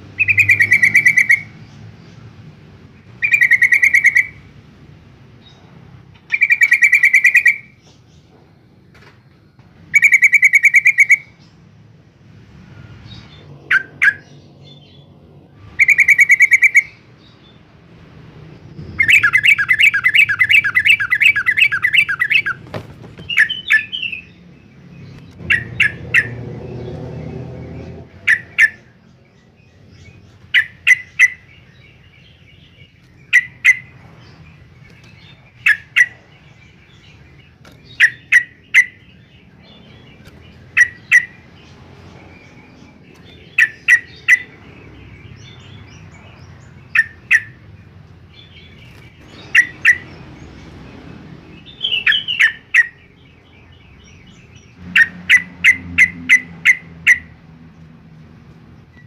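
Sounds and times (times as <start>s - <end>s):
bird chirping rapidly: 0.1s - 2.2s, 2.8s - 4.6s, 5.3s - 8.3s, 9.8s - 11.6s, 12.6s - 17.7s, 18.3s - 57.8s.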